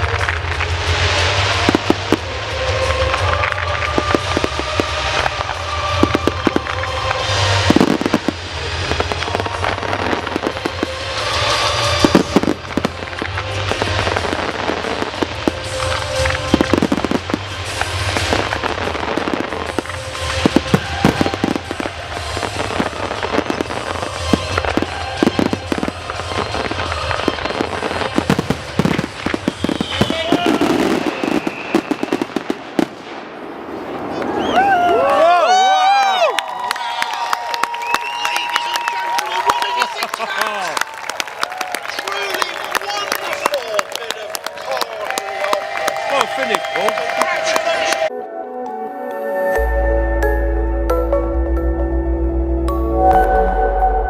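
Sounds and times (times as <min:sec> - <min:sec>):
music playing: 0:00.0 - 0:32.5, 0:41.9 - 0:54.0
fireworks bangs and crackles: 0:00.0 - 0:48.1.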